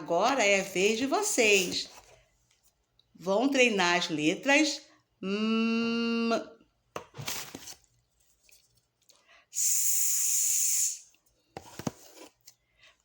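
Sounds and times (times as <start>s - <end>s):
woman hissing sss: 9.6s - 11.0s.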